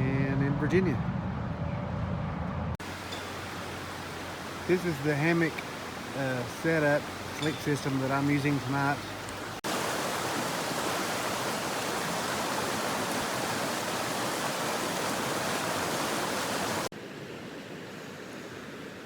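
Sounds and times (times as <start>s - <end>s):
stream rushing: 2.8s - 19.0s.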